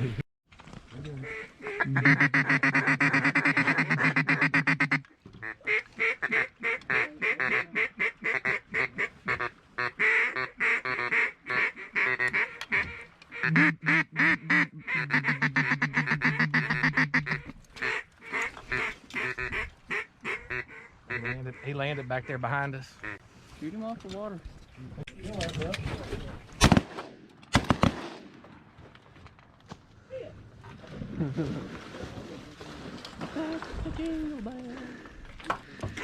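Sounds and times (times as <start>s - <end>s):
duck calls quacking: 1.2s - 23.2s
buzzy sustained duck call: 13.3s - 18.0s.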